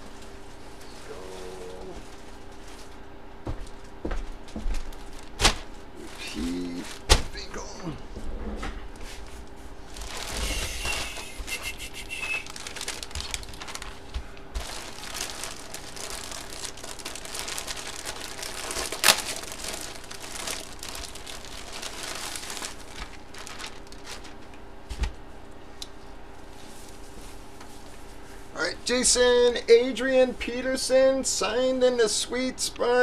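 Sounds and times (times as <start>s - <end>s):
plastic crinkling and rustling: 0.1s - 7.5s, 9.1s - 11.4s, 12.2s - 25.2s.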